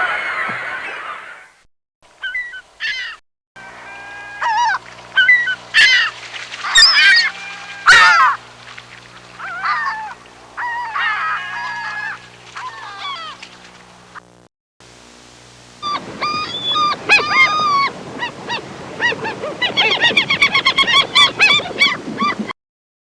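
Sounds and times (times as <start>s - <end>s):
seagulls calling: 2.2s - 13.7s, 15.8s - 22.5s
steady low hum: 3.6s - 19.6s.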